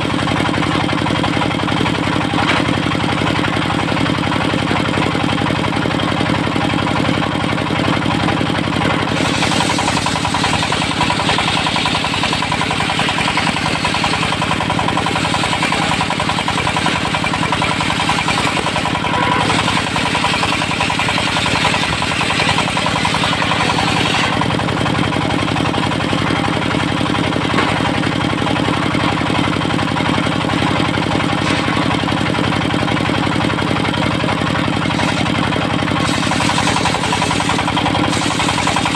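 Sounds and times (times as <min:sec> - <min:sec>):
sawmill engine running: 0:00.0 - 0:38.9
saw blade ripping wood: 0:08.9 - 0:24.8, 0:31.2 - 0:32.1, 0:34.9 - 0:38.9.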